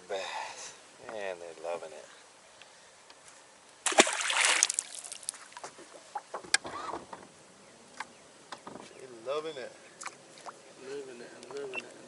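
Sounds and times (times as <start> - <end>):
water splash: 3.8 - 5.6.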